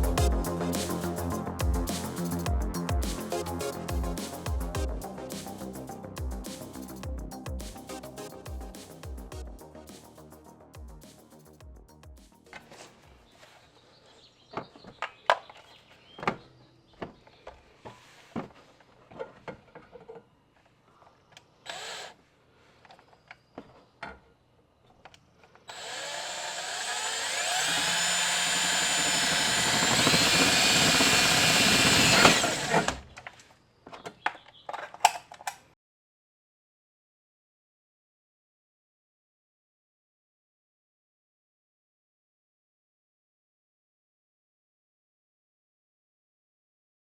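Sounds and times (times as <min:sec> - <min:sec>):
power drill whining: 0:21.7 - 0:22.2, 0:25.7 - 0:33.1
tools and parts clicking: 0:34.0 - 0:35.7.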